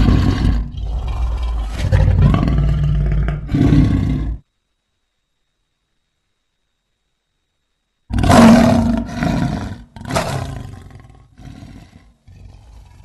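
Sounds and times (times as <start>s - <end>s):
big cat roaring: 0.0s - 4.4s, 8.1s - 13.0s
low grunting rumbles: 0.0s - 4.4s.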